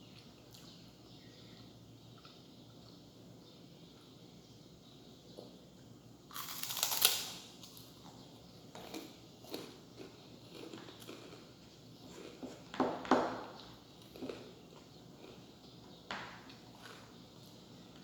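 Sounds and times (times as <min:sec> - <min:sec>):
crunching from eating: 0:06.2 - 0:18.0.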